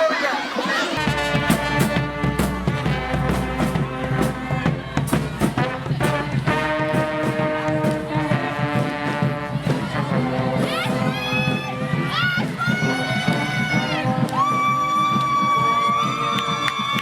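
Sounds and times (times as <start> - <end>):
brass band music: 0.0 - 16.7
steady drum beat: 1.0 - 17.0.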